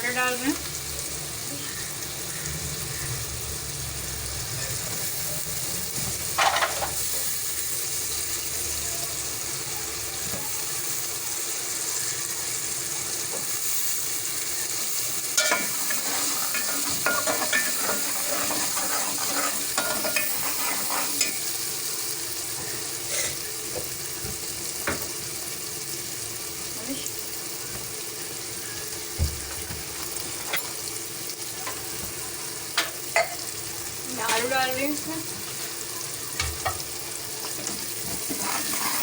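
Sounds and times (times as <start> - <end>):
peas sizzling in oil: 0.0 - 39.0
spoon scraping a pot: 15.4 - 21.6, 23.1 - 23.4, 38.0 - 39.0.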